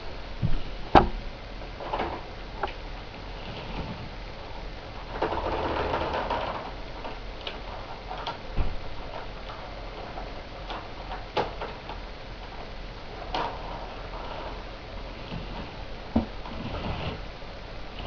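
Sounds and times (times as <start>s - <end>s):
wheel and track clicks: 5.0s - 12.6s.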